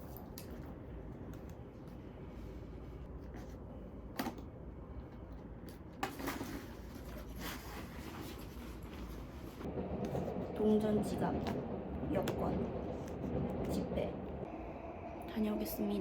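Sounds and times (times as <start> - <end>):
low hum: 9.4 - 16.0.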